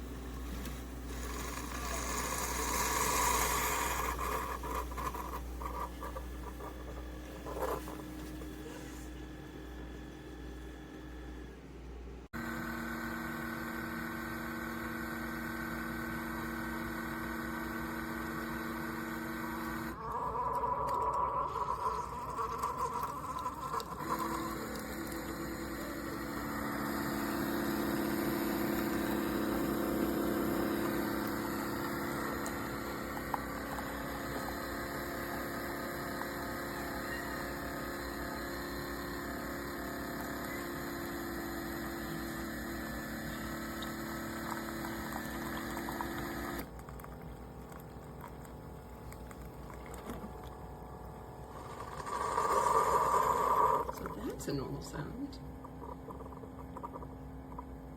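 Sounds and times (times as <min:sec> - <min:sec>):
coffee maker pump humming: 0:00.0 - 0:57.9.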